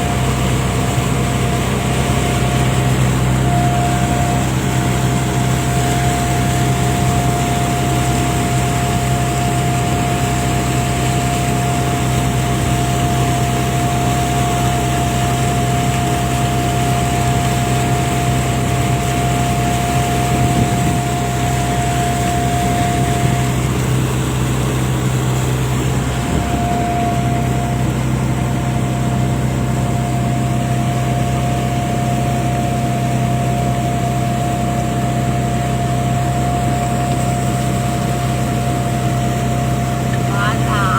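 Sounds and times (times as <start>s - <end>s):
boat engine running: 0.0s - 40.9s
high whine: 40.1s - 40.9s.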